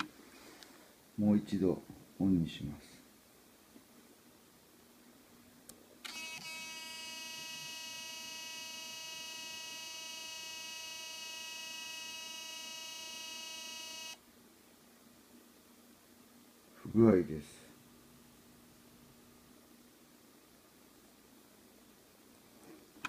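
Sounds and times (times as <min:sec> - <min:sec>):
camera high-pitched whine: 0:06.0 - 0:14.2.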